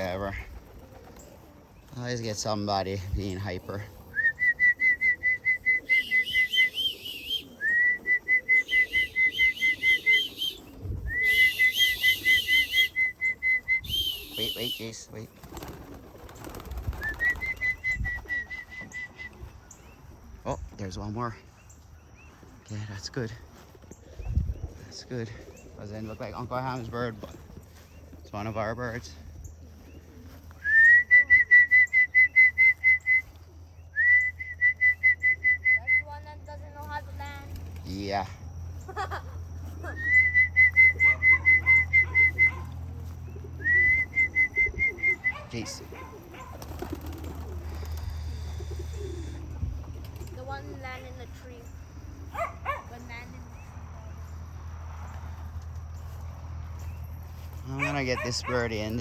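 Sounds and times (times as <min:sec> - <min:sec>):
person whistling pigeon call: 0:04.1 - 0:14.9, 0:16.8 - 0:19.4, 0:30.6 - 0:33.4, 0:34.0 - 0:36.1, 0:39.9 - 0:42.7, 0:43.6 - 0:45.5
person whistling short notes: 0:11.1 - 0:14.5.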